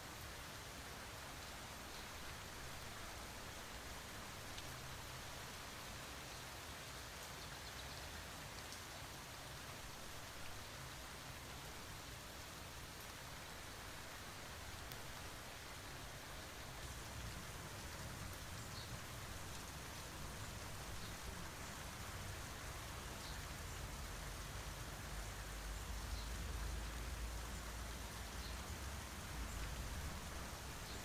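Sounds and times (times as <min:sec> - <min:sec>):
steady rain hiss: 0:00.0 - 0:31.0.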